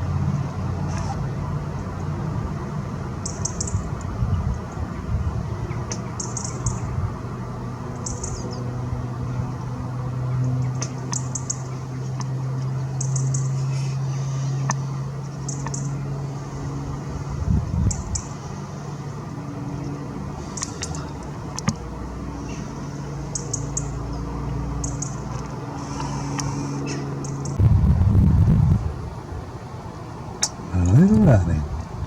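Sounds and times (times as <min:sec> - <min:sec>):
steady low hum: 0:00.0 - 0:32.0
small birds chirping: 0:03.2 - 0:07.1, 0:07.9 - 0:09.7, 0:10.3 - 0:19.1, 0:19.7 - 0:27.6.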